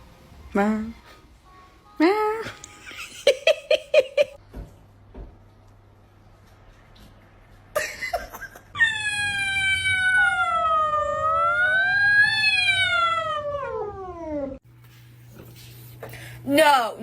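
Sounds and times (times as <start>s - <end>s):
cat yowling: 8.7s - 14.6s.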